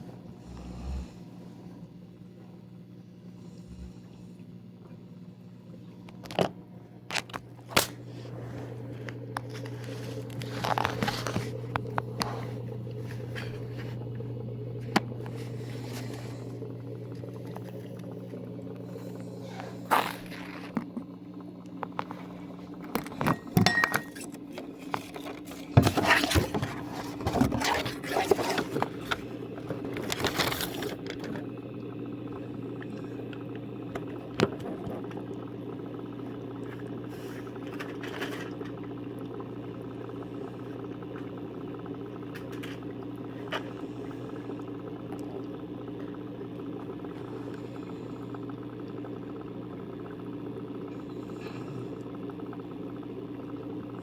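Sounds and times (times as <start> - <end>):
low hum: 0.0 - 54.0.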